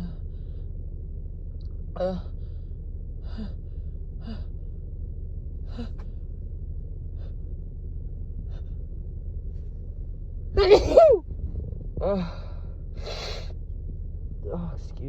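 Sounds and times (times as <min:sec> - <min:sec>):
low room hum: 0:00.0 - 0:15.0
woman sneezing: 0:10.6 - 0:11.2.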